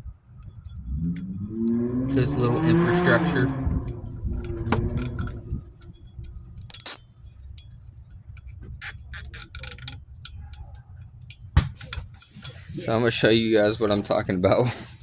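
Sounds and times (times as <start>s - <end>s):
low steady hum: 0.0s - 15.0s
light clicks and metallic clinks: 2.2s - 12.7s.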